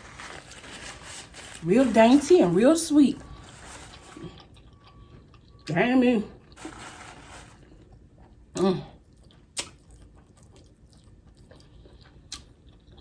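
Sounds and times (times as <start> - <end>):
chewing food: 3.2 - 5.8, 7.6 - 13.0
lip smacks: 9.2 - 11.7.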